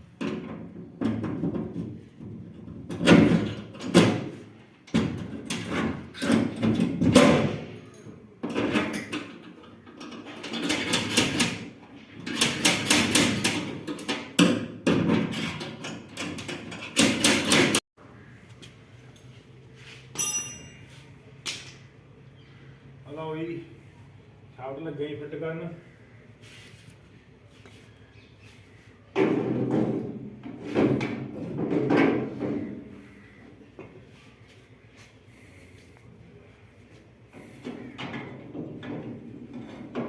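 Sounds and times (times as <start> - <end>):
metal parts clanking and scraping: 7.9 - 17.8.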